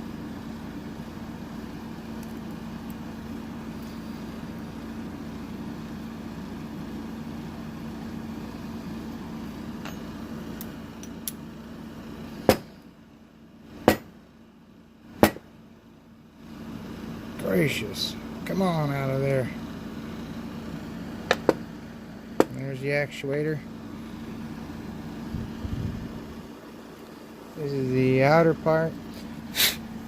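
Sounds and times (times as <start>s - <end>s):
mechanical hum: 0.0s - 30.0s
sharp metal knocks: 13.9s - 14.1s, 15.2s - 15.5s.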